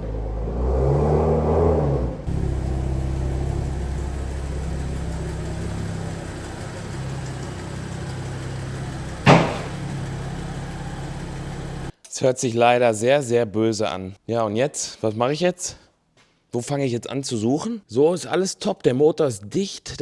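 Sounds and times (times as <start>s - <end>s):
car engine running: 2.3s - 11.9s
sharp knock: 9.3s - 9.9s.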